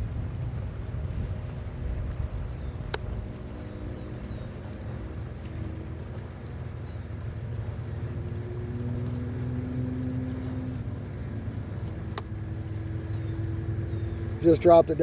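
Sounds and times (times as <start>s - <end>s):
low rumble: 0.0s - 9.9s
small boat motor humming: 0.0s - 15.0s.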